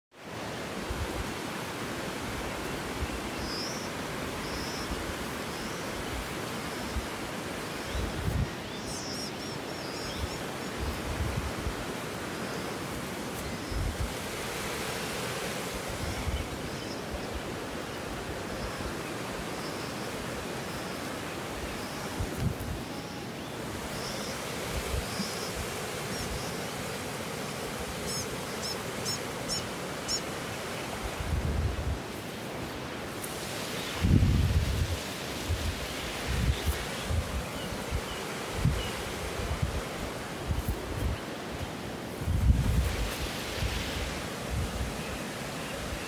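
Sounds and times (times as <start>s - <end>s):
small birds alarm calls: 7.8s - 11.0s, 28.0s - 31.0s
wind thumps on microphone: 34.0s - 37.5s, 42.2s - 44.8s.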